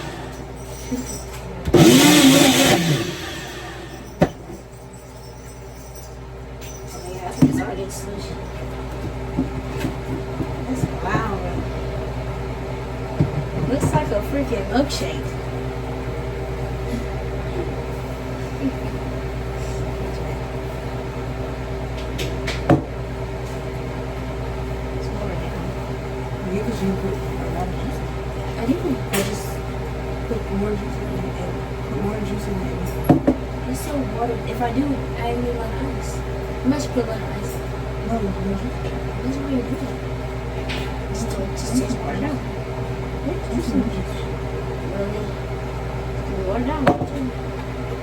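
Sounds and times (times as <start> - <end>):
blender motor crushing ice: 0.0 - 0.6, 1.7 - 4.4.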